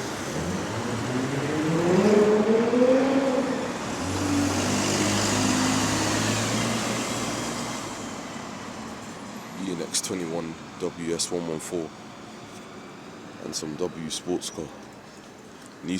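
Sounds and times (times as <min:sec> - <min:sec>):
car engine accelerating: 0:00.0 - 0:08.2.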